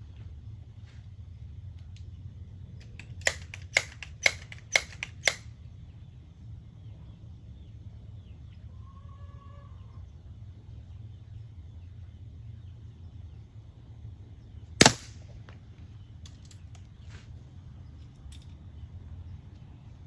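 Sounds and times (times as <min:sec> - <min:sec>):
sharp metallic clicks of pistol: 0:02.8 - 0:05.5, 0:14.8 - 0:15.6.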